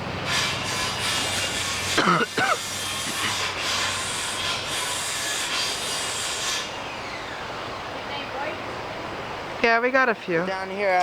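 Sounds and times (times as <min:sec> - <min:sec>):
creek water rushing: 0:00.0 - 0:11.0
harsh rasping noise: 0:00.3 - 0:06.8.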